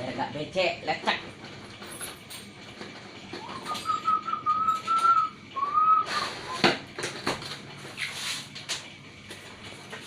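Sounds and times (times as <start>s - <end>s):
person whistling: 3.5s - 6.7s.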